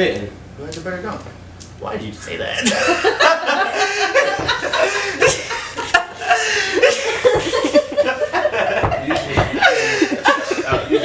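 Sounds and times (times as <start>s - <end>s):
men laughing loudly: 2.6s - 11.0s
sharp knocks: 4.2s - 5.5s, 7.2s - 7.7s, 8.8s - 9.6s.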